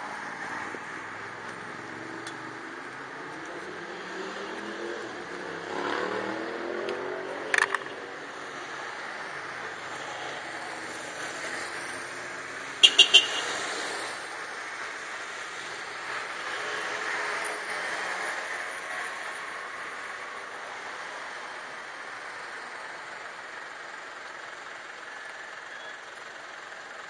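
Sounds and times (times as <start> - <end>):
car engine accelerating: 0.0 - 12.6
road noise: 0.0 - 27.0.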